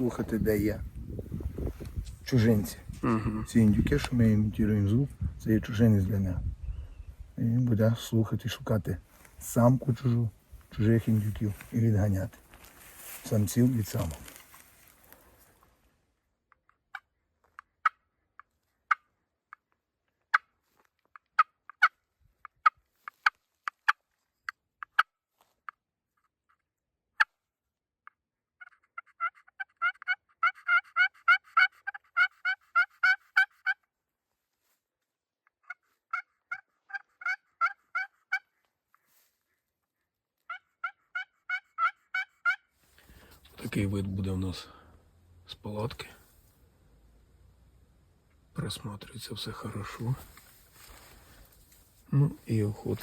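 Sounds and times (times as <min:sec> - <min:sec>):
turkey call clucks and yelps: 0:28.6 - 0:33.9, 0:35.6 - 0:38.6, 0:40.5 - 0:42.7.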